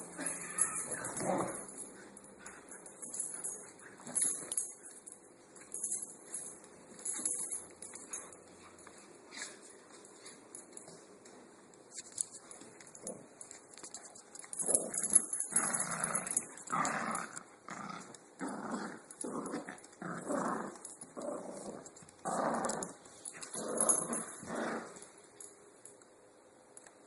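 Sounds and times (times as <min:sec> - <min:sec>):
dogs growling in play: 0:00.0 - 0:04.7, 0:14.6 - 0:25.1.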